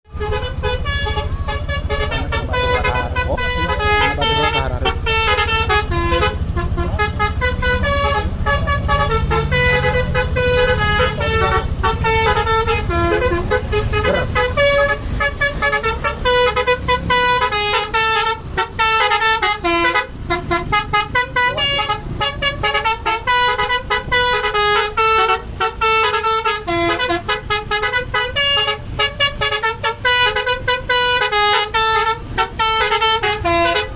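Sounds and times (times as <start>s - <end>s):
bus engine running: 0.1s - 33.9s
musical bus horn: 0.1s - 33.9s.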